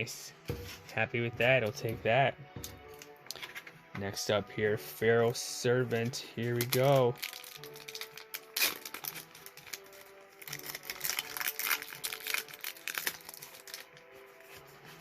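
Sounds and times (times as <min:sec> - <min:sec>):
quiet background music: 0:00.0 - 0:15.0
wrapper crinkling and tearing: 0:06.5 - 0:14.3.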